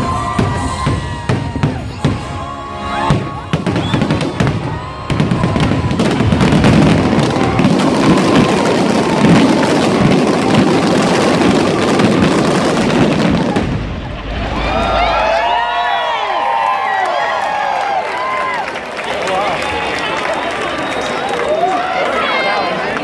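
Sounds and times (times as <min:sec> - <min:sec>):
fireworks bursting and crackling: 0:00.0 - 0:15.9.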